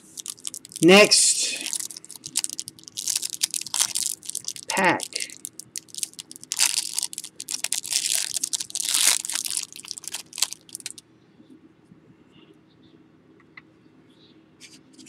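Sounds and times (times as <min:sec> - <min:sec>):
wrapper crackling and ripping: 0:00.0 - 0:11.0.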